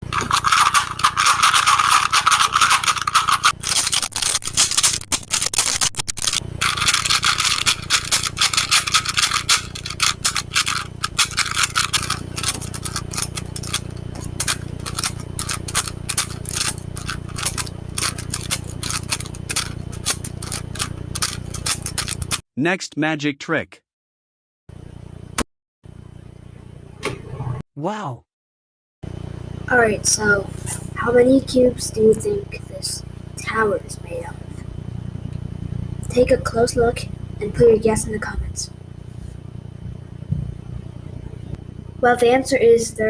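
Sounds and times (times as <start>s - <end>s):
rubik's cube clicking and scraping: 0.0s - 22.4s.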